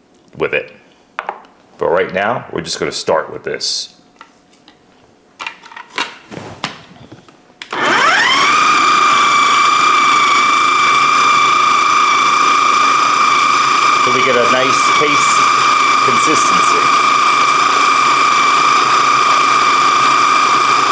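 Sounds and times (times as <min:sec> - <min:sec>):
food processor motor whining: 0:07.7 - 0:20.9.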